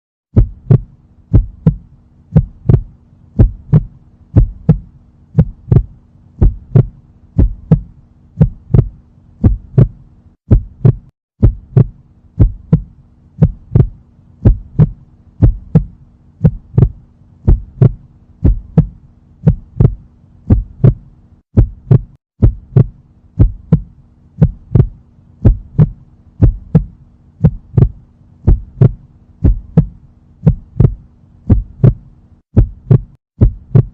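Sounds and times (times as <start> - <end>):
heartbeat: 0.3 - 33.9
steady low hum: 0.3 - 33.9.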